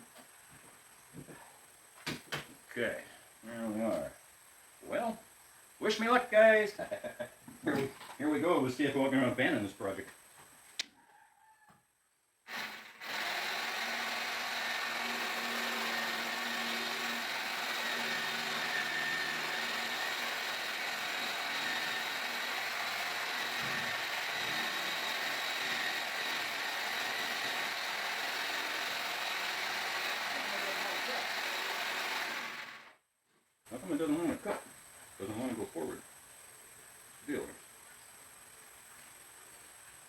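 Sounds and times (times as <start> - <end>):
electric power tool running: 12.5 - 33.0.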